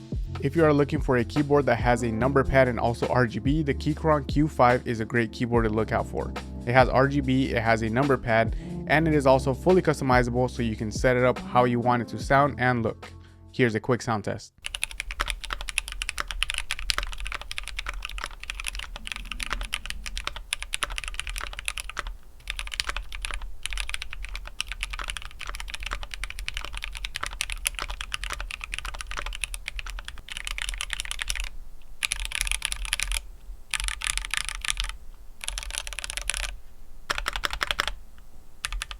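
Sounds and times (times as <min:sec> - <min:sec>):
fast typing on mechanical keyboard: 0:14.6 - 0:38.0, 0:38.6 - 0:38.9.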